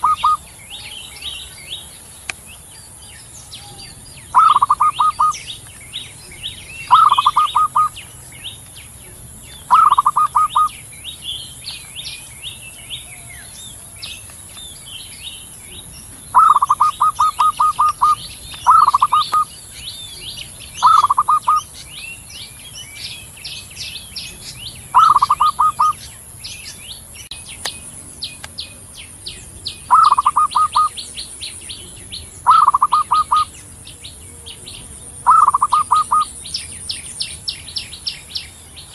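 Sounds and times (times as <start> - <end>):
dove cooing: 0.0 - 1.9, 3.5 - 5.5, 6.2 - 8.1, 9.7 - 10.8, 16.3 - 19.5, 20.2 - 21.7, 24.3 - 26.0, 29.9 - 31.1, 31.8 - 33.6, 34.2 - 36.3
small birds chirping: 0.0 - 38.9.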